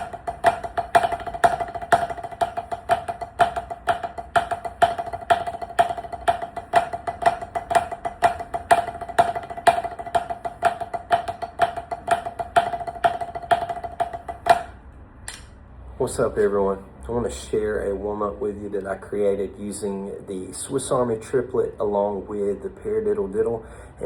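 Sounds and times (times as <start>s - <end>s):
drum ringing: 0.0s - 14.8s.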